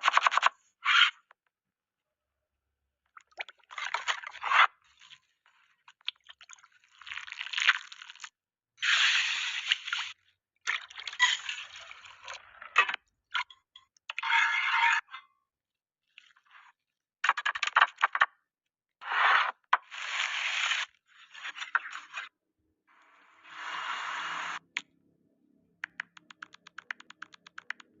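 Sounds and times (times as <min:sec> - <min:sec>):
sharp clicks: 0:25.8 - 0:28.0.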